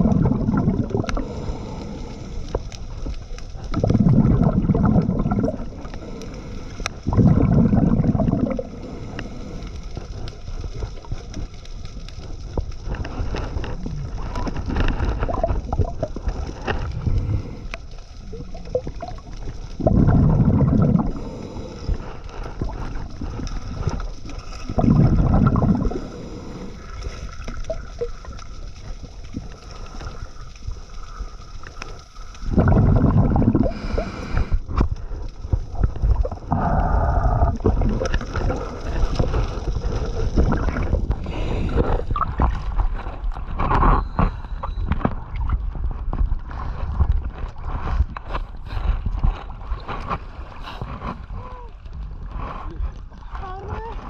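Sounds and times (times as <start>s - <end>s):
exhaled bubbles bursting: 0.0s - 1.7s, 2.8s - 9.5s, 12.6s - 29.6s, 32.3s - 48.2s
quiet bubbling: 0.0s - 54.0s.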